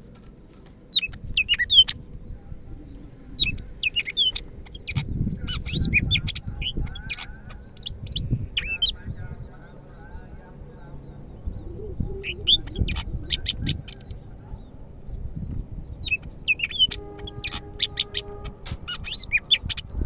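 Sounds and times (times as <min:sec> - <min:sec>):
bird singing high whistled notes: 0:00.9 - 0:09.0, 0:11.0 - 0:14.2, 0:15.8 - 0:20.0.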